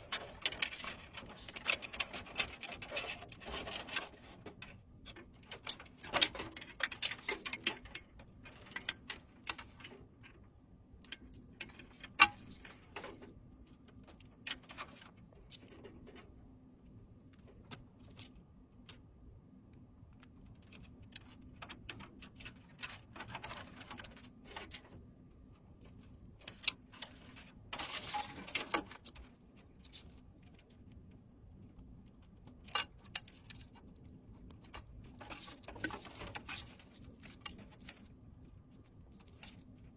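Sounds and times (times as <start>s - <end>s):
clicks and scrapes of small parts: 0.0s - 39.9s
faint steady hum: 0.0s - 39.9s.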